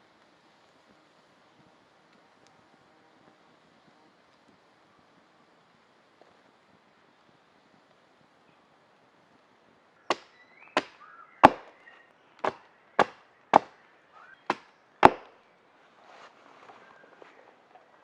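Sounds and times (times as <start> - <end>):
branches rustling and crackling: 0.0 - 18.0
wood chopping blows: 10.1 - 13.8, 14.4 - 15.4.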